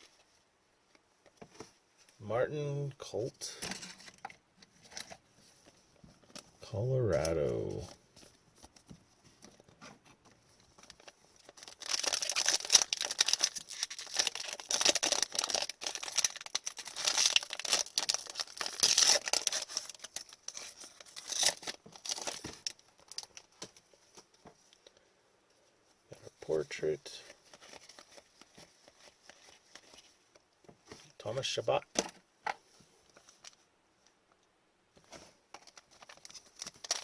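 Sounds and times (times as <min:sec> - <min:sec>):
foil wrapper tearing and crinkling: 0:10.8 - 0:23.8, 0:27.3 - 0:30.2, 0:35.6 - 0:37.0.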